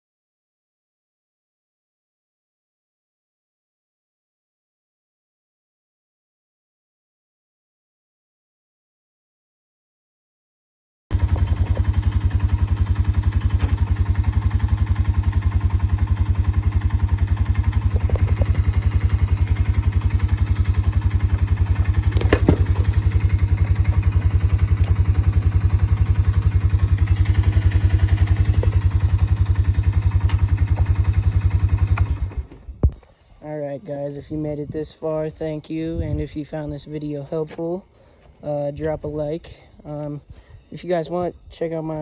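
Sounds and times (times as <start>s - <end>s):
atv engine idling: 11.1s - 32.8s.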